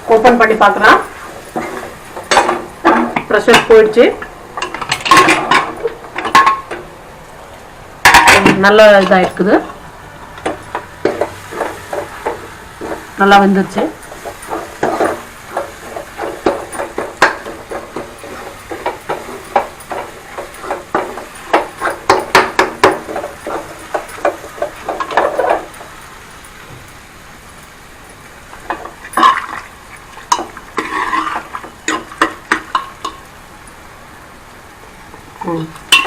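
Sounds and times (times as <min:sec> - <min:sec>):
light sizzle: 0:00.0 - 0:36.0
metal spoon stirring in pot: 0:10.4 - 0:33.3.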